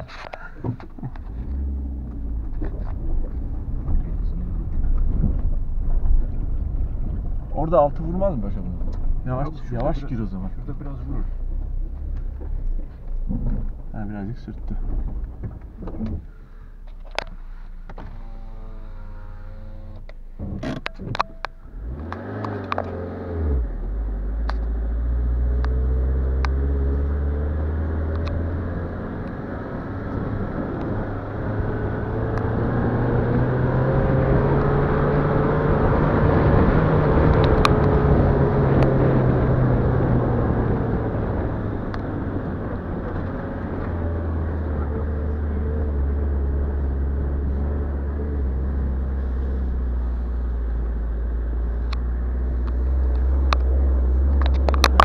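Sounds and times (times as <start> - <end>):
small ticks and knocks from road: 0.0 - 7.6, 11.3 - 18.2, 24.4 - 24.8, 28.0 - 28.5, 37.2 - 38.0, 51.5 - 55.0
car engine: 0.0 - 55.0
tyres on dirt track: 0.0 - 55.0.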